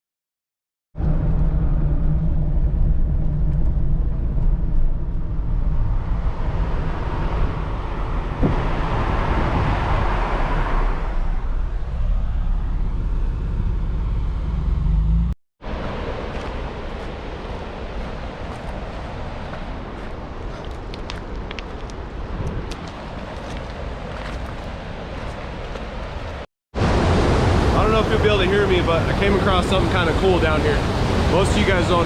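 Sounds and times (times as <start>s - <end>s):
rushing swell: 1.0s - 19.4s
vehicle engine and tyres rumbling: 1.0s - 32.0s.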